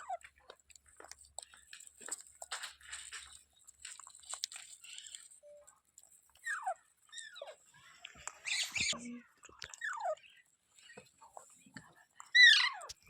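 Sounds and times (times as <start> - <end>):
parrot squeaky calls: 6.4 - 7.7, 8.3 - 9.1, 9.7 - 10.4, 12.3 - 13.0.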